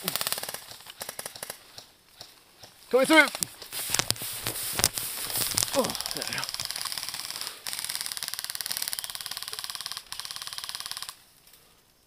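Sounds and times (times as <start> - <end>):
airsoft rifle rapid fire: 0.0 - 1.6, 3.9 - 11.2.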